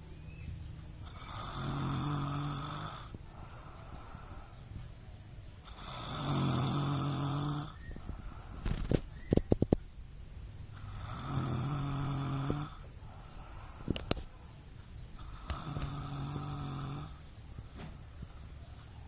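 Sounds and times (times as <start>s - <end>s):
woman snoring: 1.0s - 4.0s, 5.6s - 7.8s, 10.8s - 12.8s, 15.2s - 17.2s
quiet breathing: 1.0s - 9.1s, 10.6s - 19.0s.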